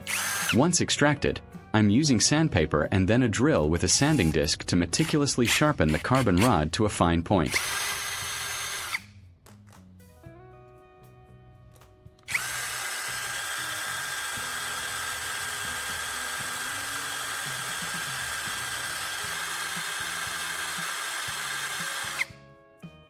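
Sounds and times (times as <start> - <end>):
drill whining: 0.0 - 0.7, 3.9 - 6.6, 7.4 - 9.1, 12.2 - 22.3
sanding disc grinding: 3.9 - 4.4, 5.0 - 6.6, 7.5 - 9.0, 12.3 - 22.2.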